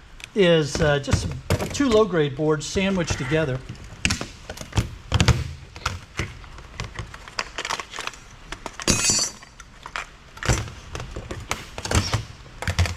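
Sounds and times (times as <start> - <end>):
metal parts knocking and clinking: 7.9 - 10.6.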